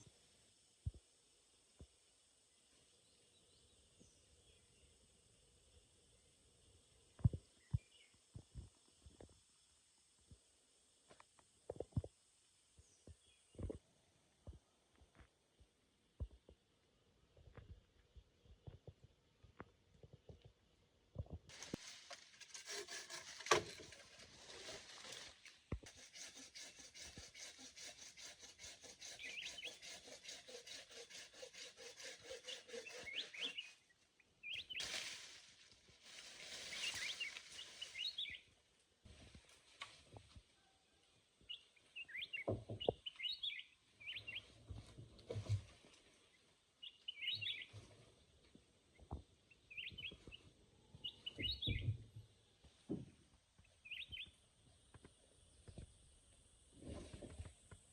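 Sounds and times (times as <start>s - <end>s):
hand saw cutting wood: 21.5s - 33.8s
small birds chirping: 29.1s - 30.1s, 32.3s - 35.0s, 36.6s - 38.5s, 41.4s - 44.5s, 46.8s - 47.8s, 48.9s - 52.3s, 53.6s - 55.0s.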